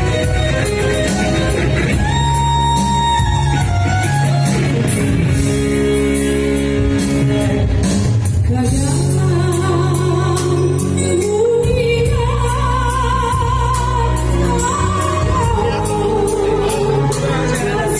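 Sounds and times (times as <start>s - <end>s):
instrumental guitar music: 0.0s - 8.8s
person singing with vibrato: 8.5s - 17.9s.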